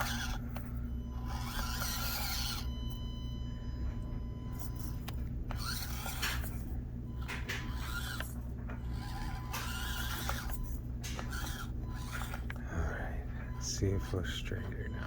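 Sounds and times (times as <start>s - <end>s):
small electric motor whirring: 0.0s - 3.2s, 4.5s - 15.0s
steady low hum: 0.0s - 15.0s.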